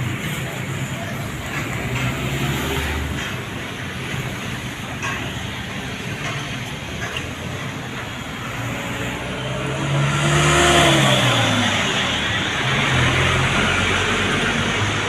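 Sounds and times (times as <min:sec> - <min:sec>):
vehicle driving past: 0:08.5 - 0:15.0.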